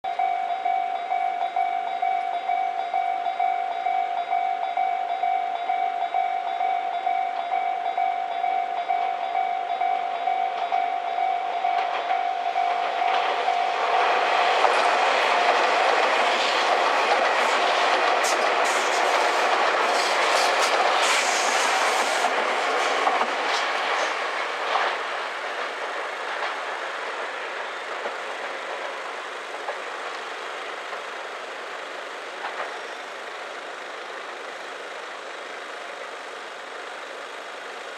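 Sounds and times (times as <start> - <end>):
level-crossing alarm ringing: 0.1 - 20.4
train passing: 0.1 - 37.9
train wheels clicking over rail joints: 0.1 - 37.9.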